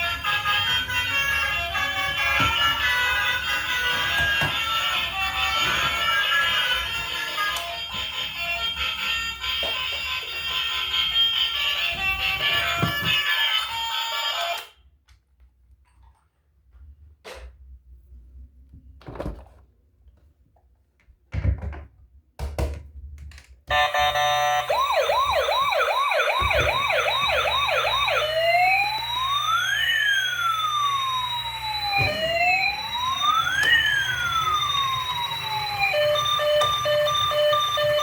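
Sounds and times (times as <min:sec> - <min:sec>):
toy electronic siren: 0:00.0 - 0:14.7, 0:23.7 - 0:38.0.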